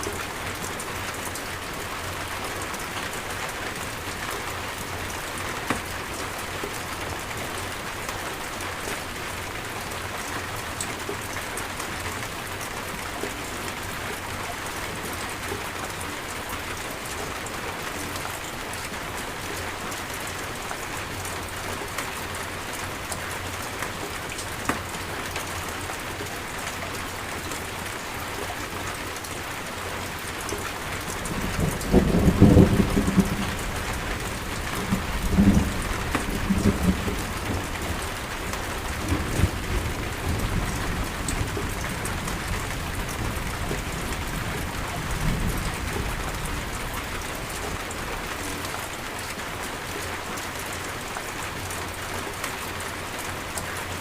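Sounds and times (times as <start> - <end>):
heavy rain pattering: 0.0 - 54.0
low rolling thunder: 31.2 - 48.0.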